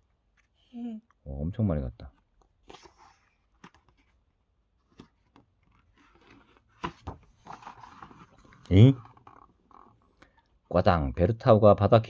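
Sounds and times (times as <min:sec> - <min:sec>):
paper rustling: 0:02.5 - 0:10.0.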